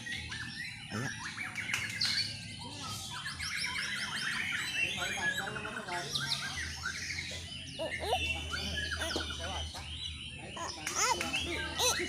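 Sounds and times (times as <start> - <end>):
songbirds whistling and trilling: 0.0 - 12.0.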